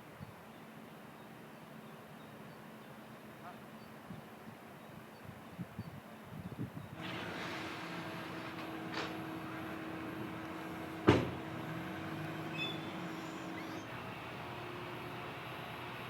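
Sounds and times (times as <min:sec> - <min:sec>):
engine running steadily: 0:07.0 - 0:16.0.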